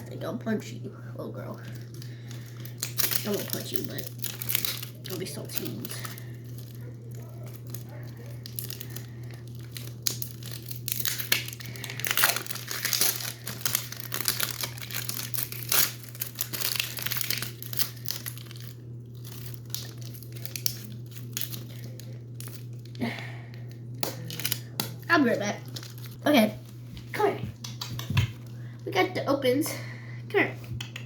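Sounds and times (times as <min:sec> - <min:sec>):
plastic wrapping crinkling and tearing: 0:01.4 - 0:26.2.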